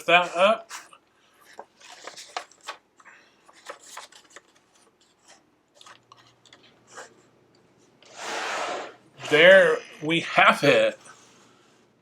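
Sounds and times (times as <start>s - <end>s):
paper rustling: 0.6s - 7.1s.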